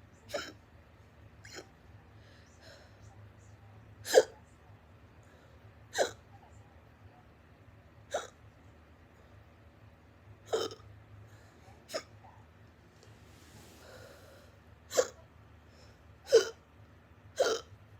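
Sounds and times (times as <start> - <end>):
person hiccuping loudly: 0.3 - 0.6, 5.9 - 6.2, 8.1 - 8.4, 10.5 - 10.8, 14.9 - 15.2, 16.3 - 16.6, 17.4 - 17.7.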